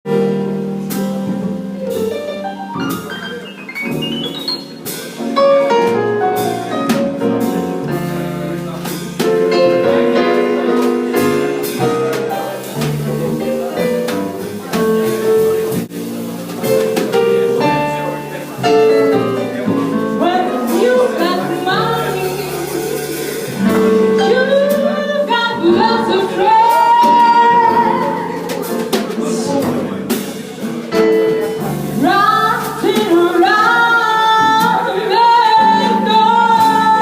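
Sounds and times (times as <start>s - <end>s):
instrumental music: 0.1s - 37.0s
drum hits: 0.8s - 25.0s
rising run of notes: 2.1s - 6.2s.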